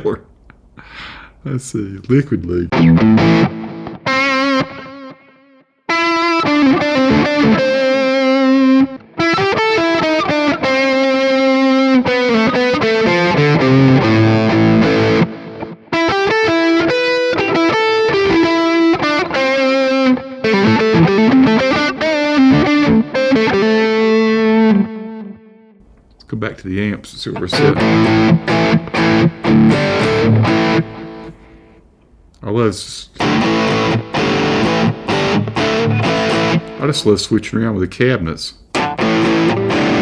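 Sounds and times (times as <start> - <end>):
distorted electric guitar lead: 2.7 - 5.3, 5.9 - 25.4, 27.4 - 31.8, 33.2 - 37.0, 38.8 - 40.0.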